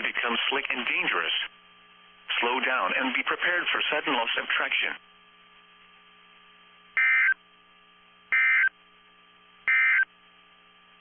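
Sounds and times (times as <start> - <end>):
faint steady hum: 0.0 - 11.0
digital data tone bursts: 7.0 - 7.4, 8.3 - 8.7, 9.7 - 10.1.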